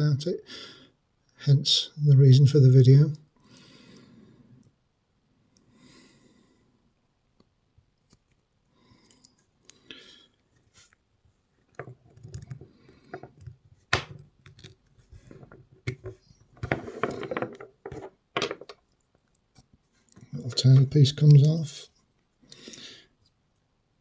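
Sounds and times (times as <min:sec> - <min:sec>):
handling noise: 0:11.8 - 0:18.8.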